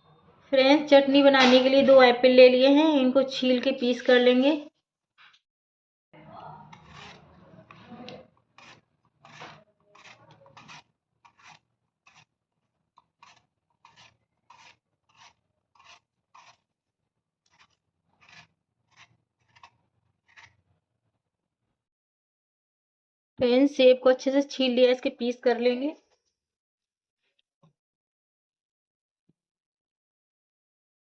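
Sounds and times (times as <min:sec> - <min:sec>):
knife peeling apple: 0:06.6 - 0:16.8, 0:17.4 - 0:20.8.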